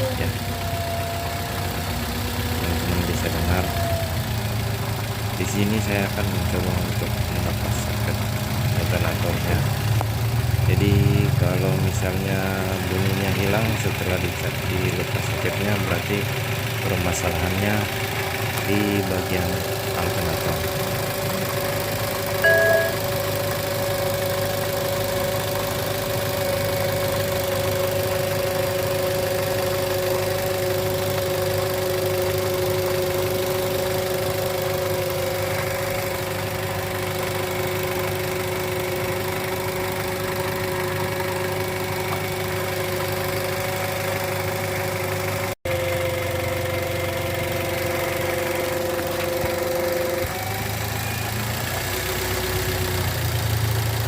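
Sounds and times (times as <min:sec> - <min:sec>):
alternator whining howl: 0:00.0 - 0:04.7, 0:45.7 - 0:51.8
car engine idling: 0:00.0 - 0:54.0.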